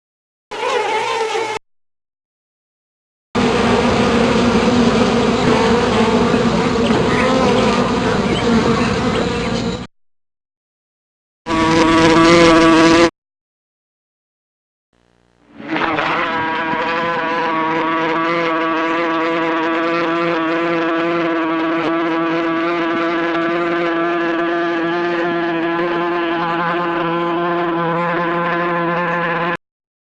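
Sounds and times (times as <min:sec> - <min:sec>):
bees buzzing: 0:00.5 - 0:01.6, 0:03.4 - 0:09.9, 0:11.5 - 0:13.1, 0:15.5 - 0:29.6.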